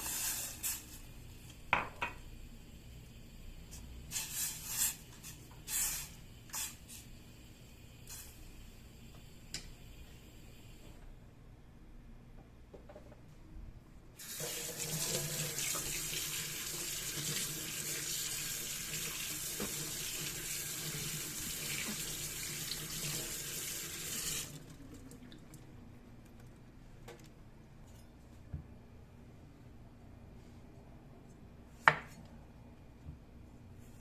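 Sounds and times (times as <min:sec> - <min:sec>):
tap water splashing into sink: 0:19.5 - 0:20.0.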